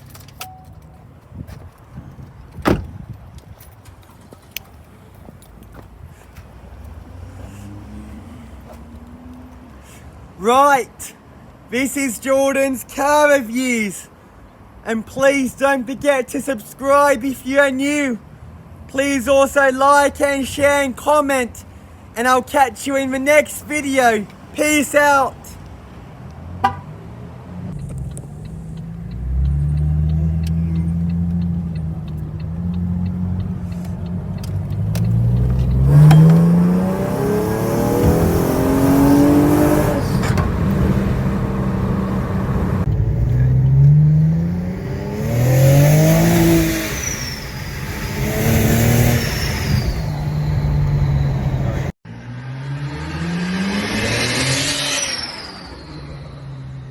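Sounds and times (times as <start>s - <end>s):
car engine accelerating: 27.3s - 56.9s.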